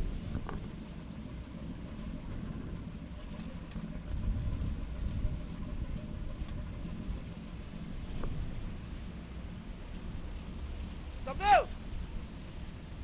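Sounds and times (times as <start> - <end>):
low rumble aboard ship: 0.0 - 13.0
light clicks: 3.2 - 3.8.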